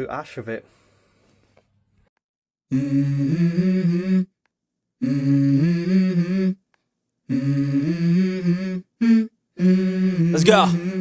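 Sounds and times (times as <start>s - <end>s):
humming voice-like melody: 2.7s - 4.4s, 5.0s - 6.6s, 7.3s - 11.0s.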